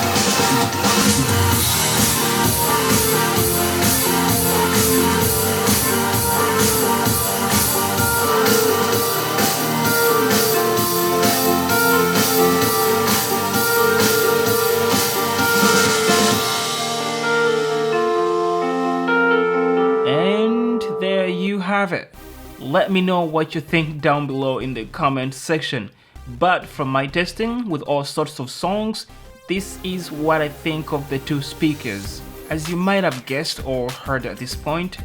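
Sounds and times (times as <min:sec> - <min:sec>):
rock music through speaker: 0:00.0 - 0:21.6.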